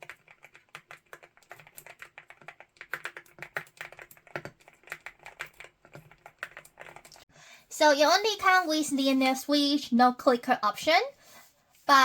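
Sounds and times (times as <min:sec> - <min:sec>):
mechanical keyboard typing: 0:00.0 - 0:07.2.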